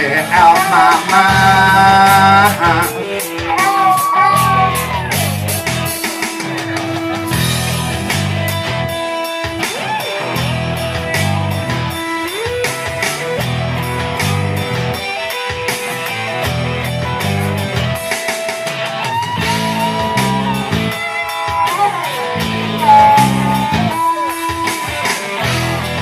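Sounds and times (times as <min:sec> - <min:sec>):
bass line: 0:00.0 - 0:09.0, 0:10.2 - 0:12.0, 0:13.0 - 0:15.1, 0:16.2 - 0:18.0, 0:19.4 - 0:24.4, 0:25.4 - 0:26.0
electric guitar sliding notes: 0:00.0 - 0:18.0, 0:18.7 - 0:26.0
drums with cymbal strokes: 0:00.0 - 0:26.0.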